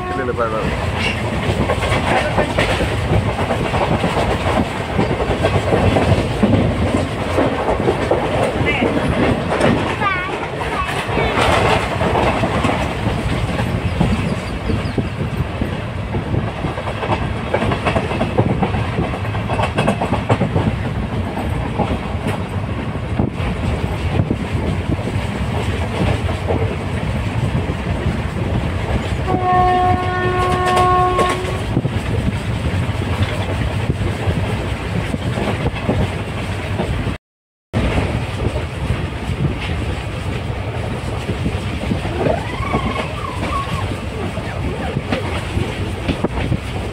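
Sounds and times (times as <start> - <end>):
train horn: 0.0 - 0.5, 29.2 - 31.7
train wheels clacking on rails: 0.1 - 37.2, 37.8 - 46.9.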